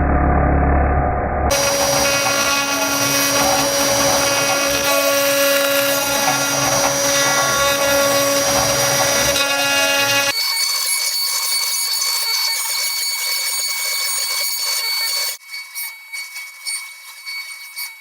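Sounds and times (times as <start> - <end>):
loud cutting noise: 1.5 - 15.4
cnc router spindle whine: 1.5 - 18.0.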